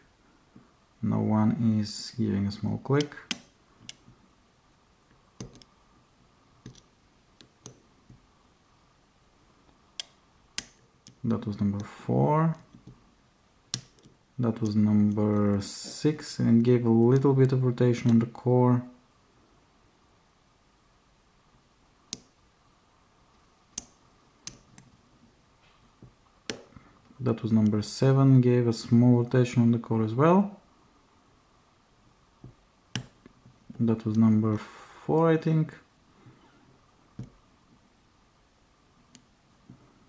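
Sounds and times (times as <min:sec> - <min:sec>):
lock pick clicking pins: 0:05.4 - 0:05.7, 0:13.7 - 0:15.6.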